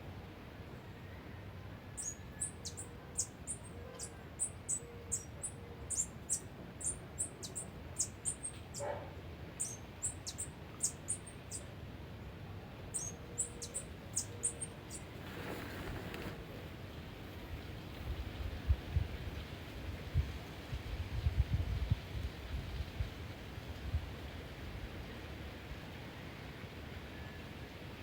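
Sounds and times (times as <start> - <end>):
small bird chirping: 2.0 - 8.9, 9.6 - 11.7, 12.9 - 15.1.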